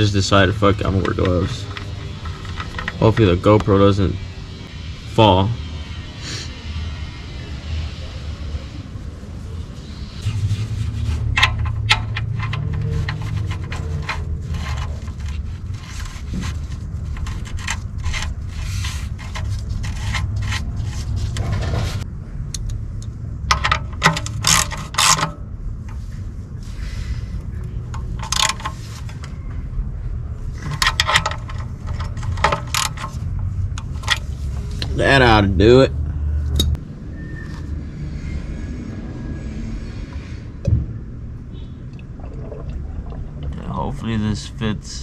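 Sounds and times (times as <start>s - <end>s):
hand tools scraping and clicking: 0.6s - 3.8s, 10.2s - 22.0s, 27.9s - 29.2s, 30.6s - 34.9s
steady low hum: 37.8s - 45.0s.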